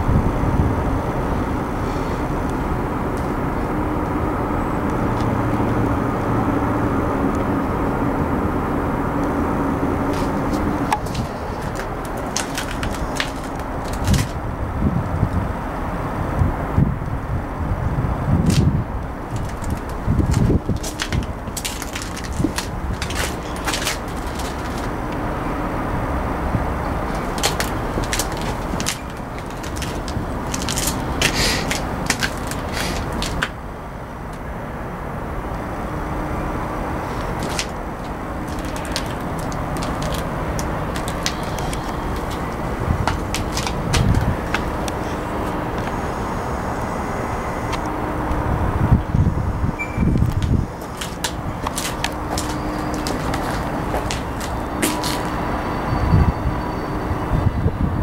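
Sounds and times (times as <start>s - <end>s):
diesel generator running: 0.0s - 56.2s
short crackles: 10.2s - 14.4s, 19.3s - 25.0s, 27.1s - 33.6s, 37.0s - 45.4s, 50.2s - 55.4s.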